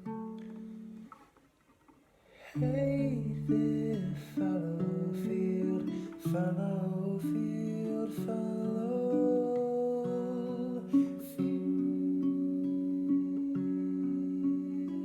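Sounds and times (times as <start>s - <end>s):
acoustic guitar music: 0.0s - 15.0s.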